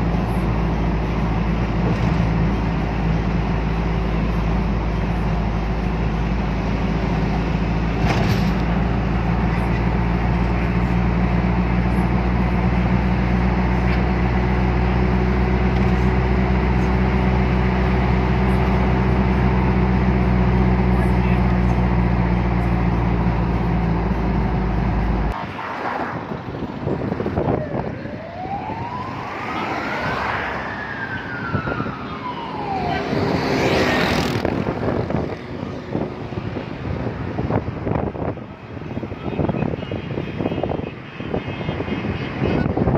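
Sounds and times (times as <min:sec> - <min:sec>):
low vehicle drone: 0:00.0 - 0:40.9
siren-like wail: 0:27.3 - 0:34.4.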